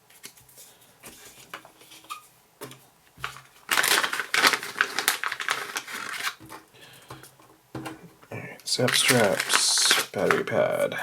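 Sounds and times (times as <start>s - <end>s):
plastic bags crinkling: 3.2s - 11.0s.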